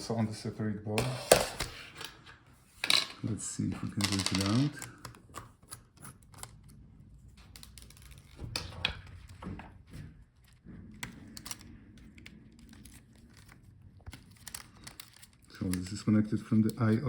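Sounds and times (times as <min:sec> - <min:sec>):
small parts clicking and tapping: 0:10.4 - 0:16.0.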